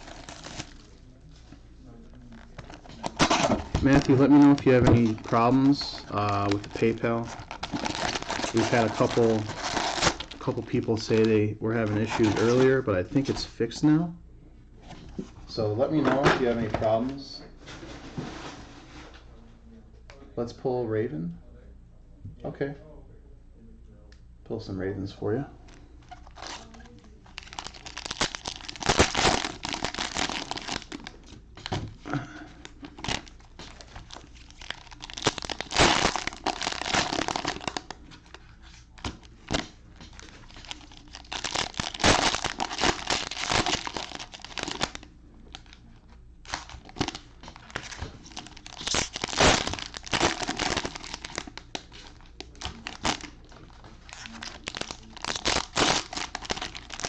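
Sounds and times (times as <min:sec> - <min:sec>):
cellophane wrappers crinkling and tearing: 0:00.0 - 0:01.0, 0:02.1 - 0:13.4, 0:26.1 - 0:57.0.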